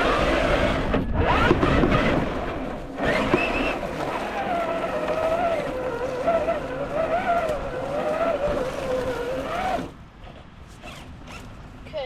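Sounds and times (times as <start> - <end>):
toy car electric motor whining: 3.0 - 9.9.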